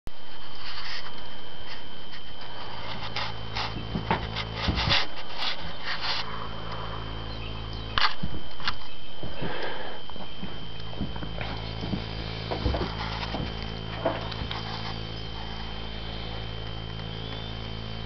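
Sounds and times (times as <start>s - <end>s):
steady low hum: 0.1s - 18.0s
rubbing and scraping: 0.4s - 6.3s, 11.3s - 15.9s.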